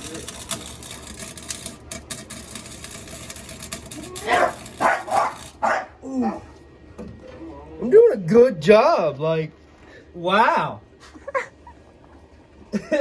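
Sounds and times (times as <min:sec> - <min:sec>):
welder arc crackling: 0:00.0 - 0:05.6.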